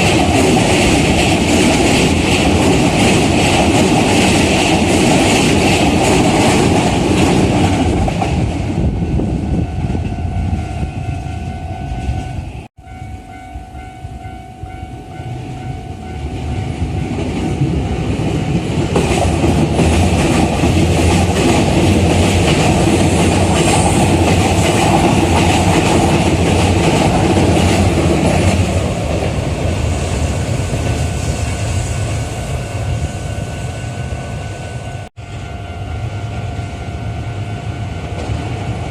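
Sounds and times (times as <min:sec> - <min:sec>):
electric train rumbling: 0:00.0 - 0:38.9
crossing warning bell ringing: 0:09.1 - 0:18.8, 0:32.4 - 0:38.9
train wheels clattering over rail joints: 0:18.8 - 0:31.1.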